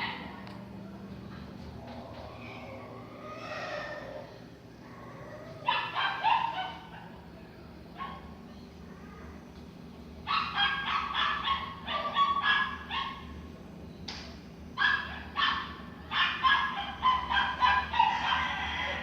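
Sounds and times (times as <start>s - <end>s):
animal high cries: 2.4s - 6.9s.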